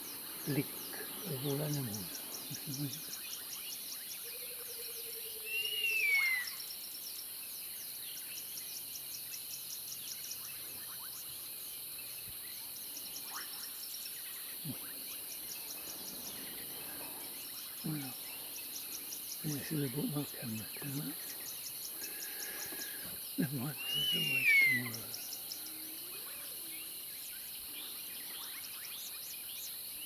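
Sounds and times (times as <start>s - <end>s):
crickets chirping: 0.0s - 30.0s
animal call with falling whistle: 23.9s - 24.9s.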